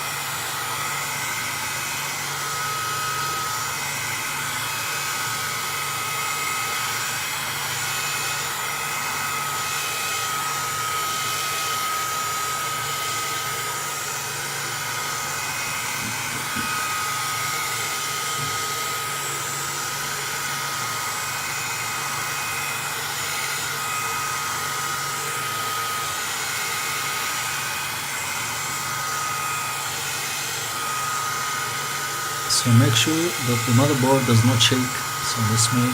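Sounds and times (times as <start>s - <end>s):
heat gun blowing air: 0.0s - 35.9s
thin high whine: 32.5s - 35.9s.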